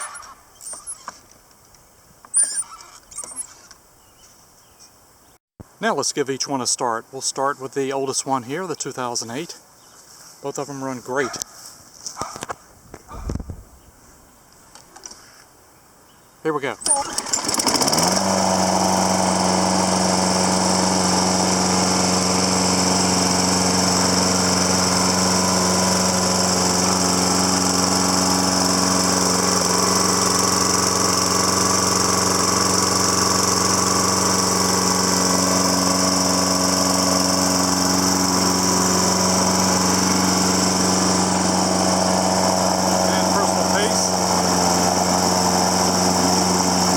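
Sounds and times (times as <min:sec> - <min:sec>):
lawn mower engine running: 0:16.8 - 0:46.9.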